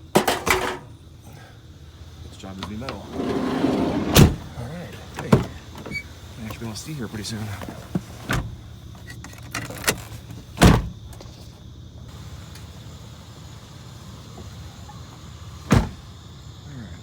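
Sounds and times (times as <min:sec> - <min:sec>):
vehicle engine idling: 0:00.0 - 0:17.0.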